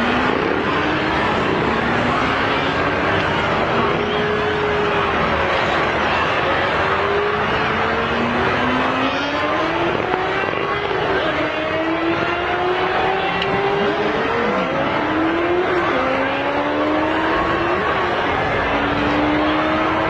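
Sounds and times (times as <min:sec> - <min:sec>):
steady rush of noise: 0:00.0 - 0:20.0
vehicle engines revving: 0:00.0 - 0:20.0.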